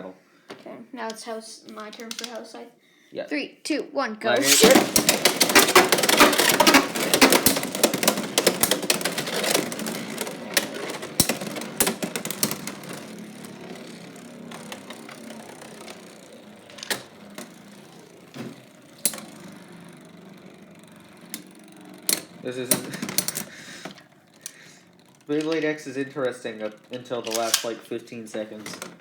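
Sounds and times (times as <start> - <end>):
spinning tops clashing: 4.4 - 23.8, 24.4 - 27.9
whir of spinning tops: 4.4 - 29.0.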